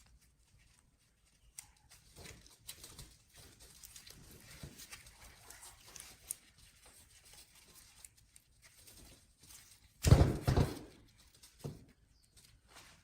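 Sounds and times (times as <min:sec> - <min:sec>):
small clicks and handling noises: 0:00.0 - 0:10.0
loud thump and clatter: 0:10.0 - 0:11.0.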